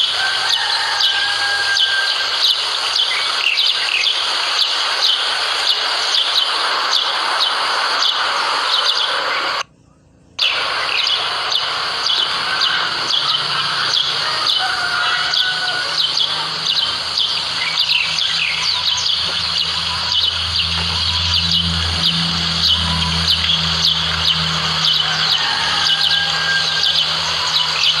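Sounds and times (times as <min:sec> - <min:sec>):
birds chirping: 0:00.0 - 0:28.0
low steady hum: 0:09.4 - 0:28.0.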